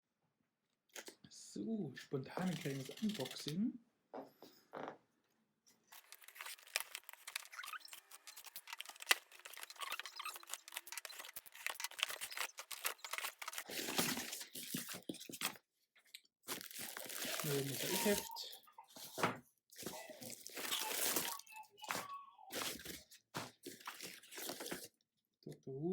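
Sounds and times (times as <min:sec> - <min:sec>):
paper and cardboard tearing: 0:05.9 - 0:15.6, 0:16.5 - 0:18.4, 0:19.8 - 0:24.9.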